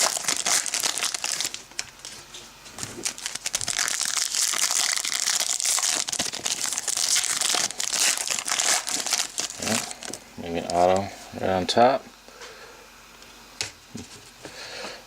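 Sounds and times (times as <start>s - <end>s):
foil wrappers crinkling: 0.0s - 11.1s.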